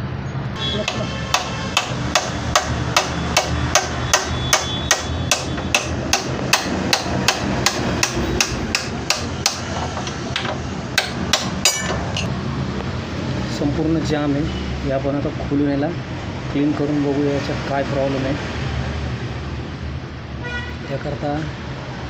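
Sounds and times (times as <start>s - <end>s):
hammer tapping on metal: 0.8s - 12.3s.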